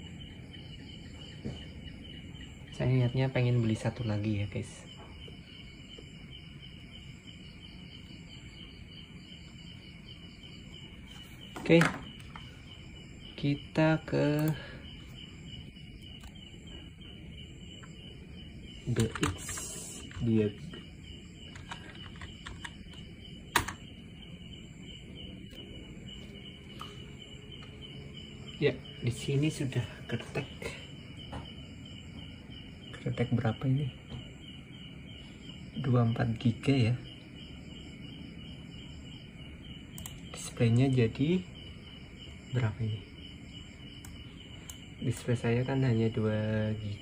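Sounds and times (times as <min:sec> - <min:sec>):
crickets chirping: 0:00.0 - 0:47.0
low background hum: 0:00.0 - 0:47.0
computer keyboard and mouse clicks: 0:18.9 - 0:20.3, 0:21.5 - 0:23.8, 0:39.9 - 0:40.3.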